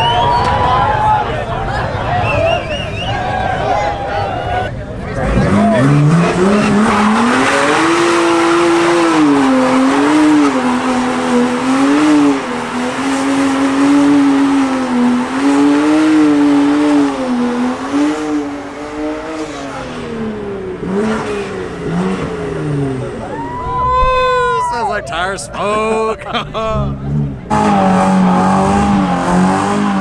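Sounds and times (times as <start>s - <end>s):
engine revving high: 5.1s - 24.0s, 26.8s - 30.0s.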